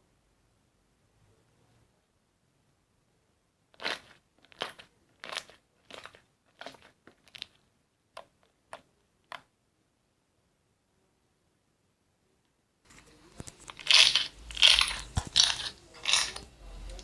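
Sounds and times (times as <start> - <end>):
slime crackling when squeezed: 13.6 - 16.4.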